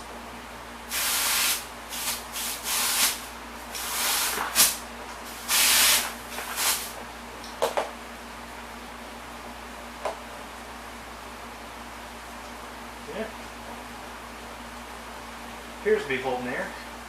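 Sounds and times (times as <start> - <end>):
compressed air hissing: 0.9 - 7.0.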